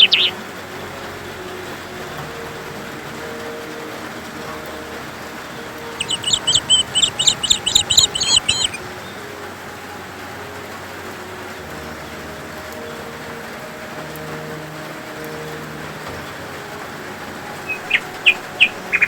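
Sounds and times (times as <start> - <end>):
songbird singing high notes: 0.0 - 0.4, 5.0 - 9.2
steady background hiss: 0.0 - 19.0.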